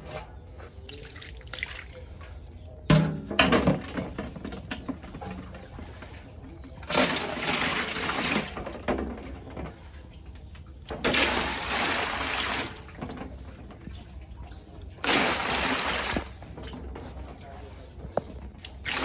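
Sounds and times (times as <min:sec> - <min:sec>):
water gushing: 0:06.9 - 0:08.6, 0:10.9 - 0:13.1, 0:14.4 - 0:16.8, 0:18.7 - 0:19.0.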